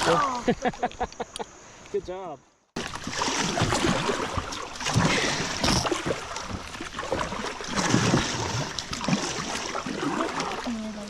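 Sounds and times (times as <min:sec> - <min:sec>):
river water splashing: 0:02.8 - 0:11.0.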